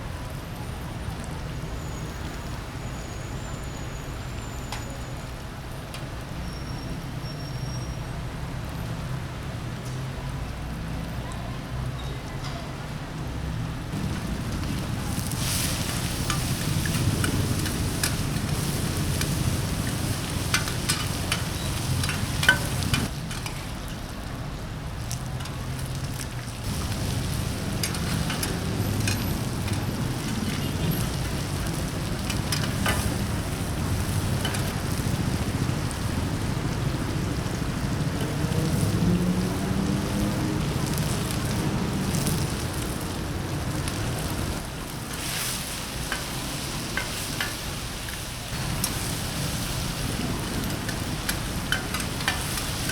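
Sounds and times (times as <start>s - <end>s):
food sizzling in a wok: 13.9s - 52.9s.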